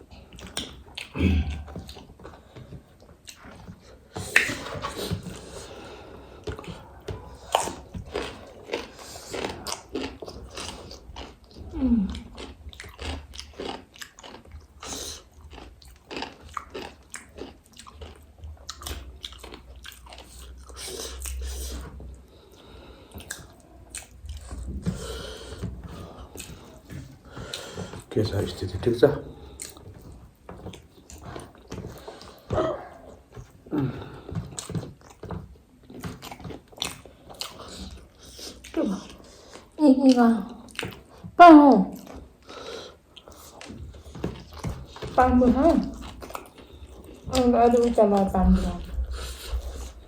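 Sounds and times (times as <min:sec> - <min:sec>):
crisp crunching and chewing: 0:06.4 - 0:21.9, 0:33.3 - 0:41.3.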